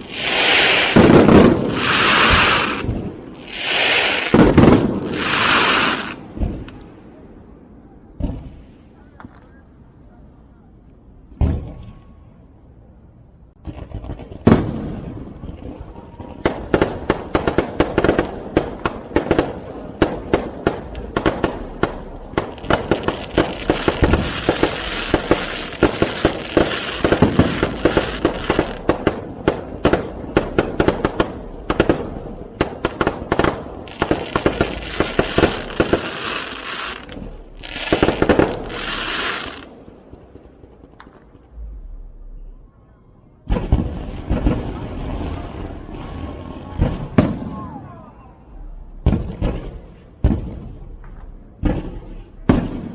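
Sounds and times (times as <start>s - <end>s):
fireworks bangs: 0.0s - 7.0s, 13.6s - 42.7s, 43.4s - 52.9s
fireworks crackling: 0.0s - 7.0s, 13.6s - 42.2s.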